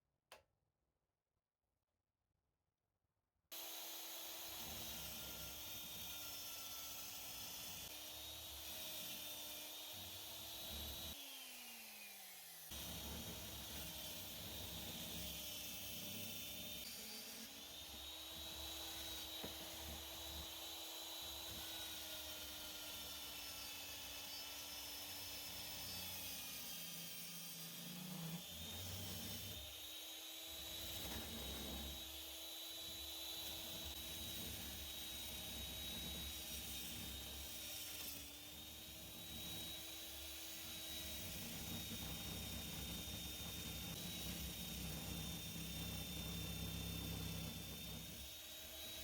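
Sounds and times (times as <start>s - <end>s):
electric drill motor humming: 3.6s - 49.0s.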